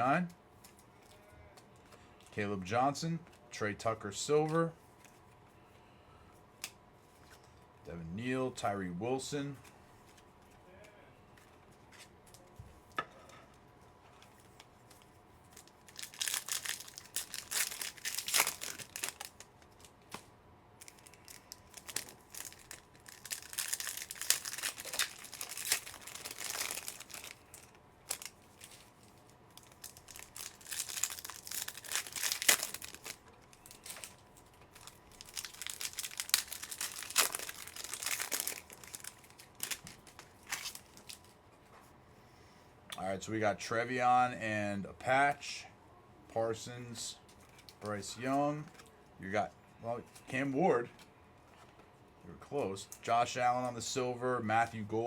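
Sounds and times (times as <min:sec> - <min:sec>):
card pack wrappers tearing and crinkling: 0:15.0 - 0:20.2, 0:20.8 - 0:41.4.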